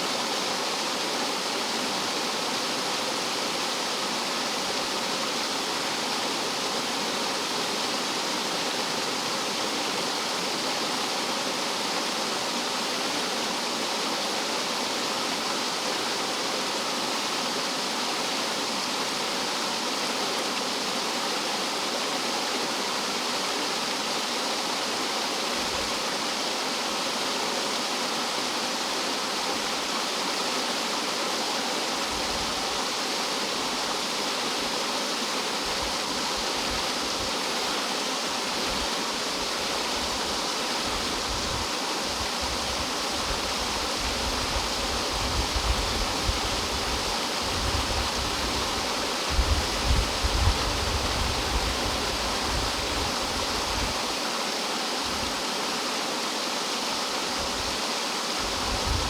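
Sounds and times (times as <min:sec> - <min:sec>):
stream water rushing over rocks: 0:00.0 - 0:59.0.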